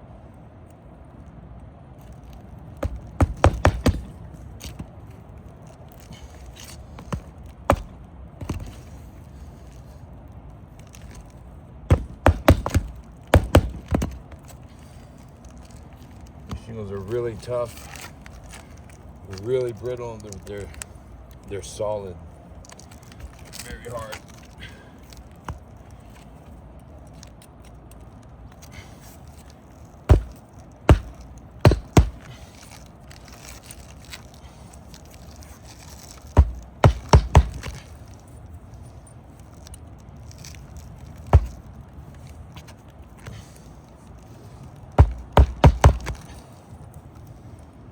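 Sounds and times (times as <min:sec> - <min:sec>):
hammer striking roofing nails: 0:02.8 - 0:04.2, 0:07.0 - 0:08.7, 0:11.9 - 0:14.2, 0:30.1 - 0:32.5, 0:36.3 - 0:38.0, 0:41.3 - 0:41.6, 0:45.0 - 0:46.4.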